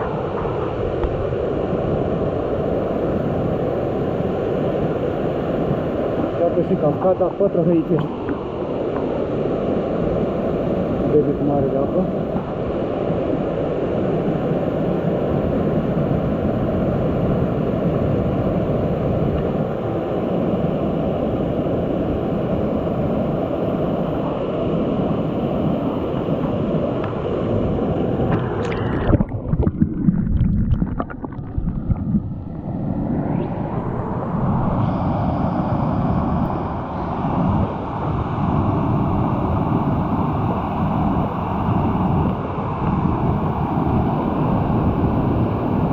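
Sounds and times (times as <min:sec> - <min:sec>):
wind buffeting microphone: 0:12.0 - 0:45.9.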